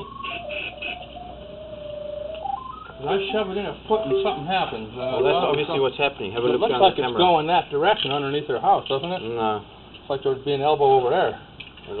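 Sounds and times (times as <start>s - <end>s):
electronic locator tone: 0.0s - 5.7s.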